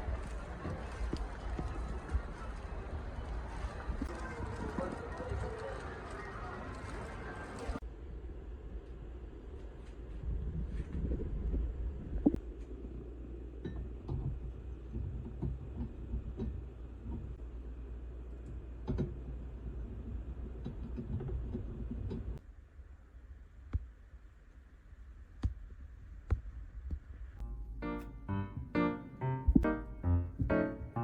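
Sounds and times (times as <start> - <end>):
steady low rumble: 7.8 - 31.0.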